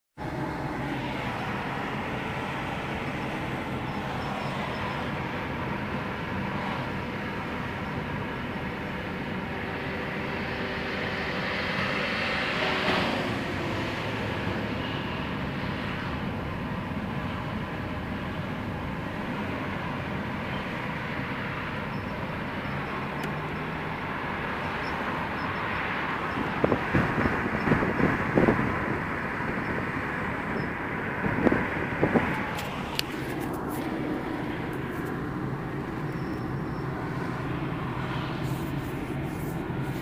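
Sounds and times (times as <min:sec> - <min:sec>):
car road noise: 0:00.2 - 0:40.0.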